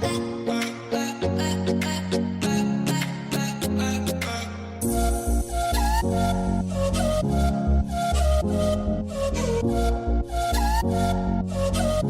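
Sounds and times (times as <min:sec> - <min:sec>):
steady bass line: 0:04.8 - 0:12.0.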